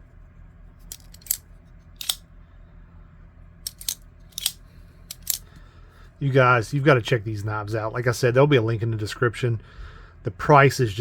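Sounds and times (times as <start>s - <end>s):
folding knife blade clicking: 2.0s - 2.2s, 3.6s - 5.4s.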